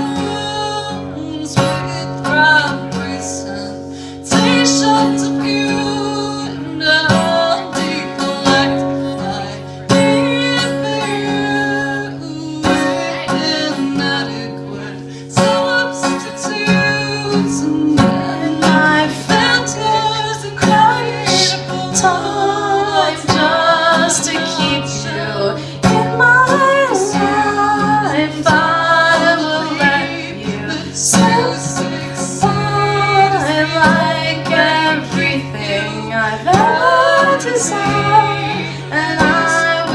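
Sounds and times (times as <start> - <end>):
acoustic guitar: 0.0 - 39.9
woman singing: 0.0 - 39.9.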